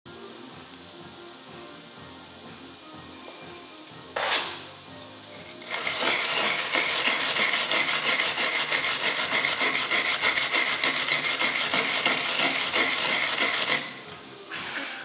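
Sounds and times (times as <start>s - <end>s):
hand tool rasping on plywood: 6.0s - 13.9s.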